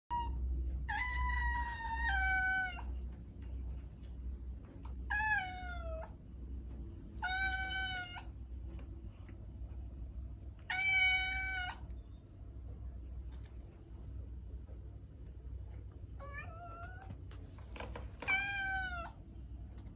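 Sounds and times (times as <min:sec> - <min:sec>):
cat meowing: 0:00.1 - 0:02.9, 0:05.1 - 0:06.1, 0:07.2 - 0:08.3, 0:10.7 - 0:11.9, 0:16.2 - 0:17.2, 0:18.2 - 0:19.2
low steady hum: 0:00.1 - 0:19.9.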